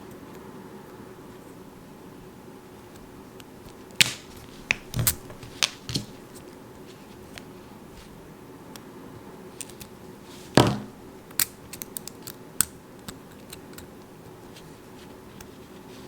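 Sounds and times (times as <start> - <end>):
loud snap: 4.0 - 4.8.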